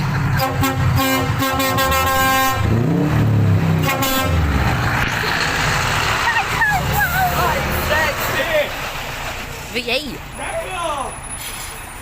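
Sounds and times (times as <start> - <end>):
engine revving: 0.0 - 9.8
lorry air horns blasting: 0.4 - 2.9, 3.8 - 4.6.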